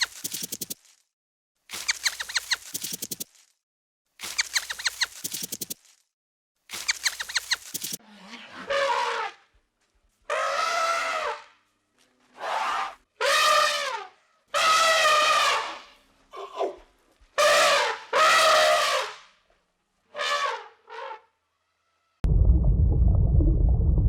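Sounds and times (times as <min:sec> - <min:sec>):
steady low rumble: 0:22.2 - 0:24.0.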